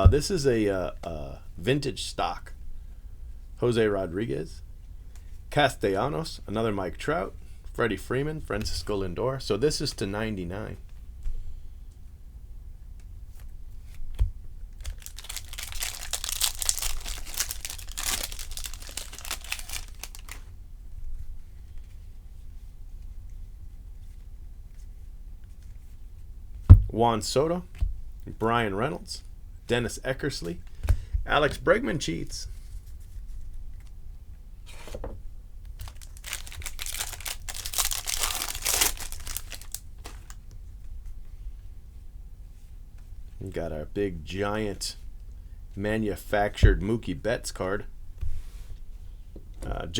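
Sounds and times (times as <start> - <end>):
wrapper tearing and crinkling: 14.8 - 20.5, 35.8 - 40.4.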